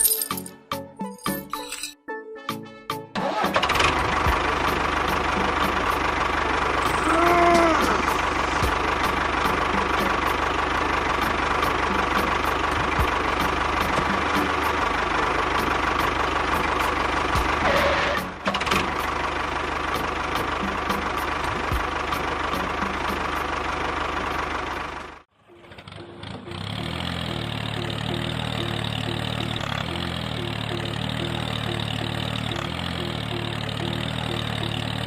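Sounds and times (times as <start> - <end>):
motor running: 6.5 - 10.0.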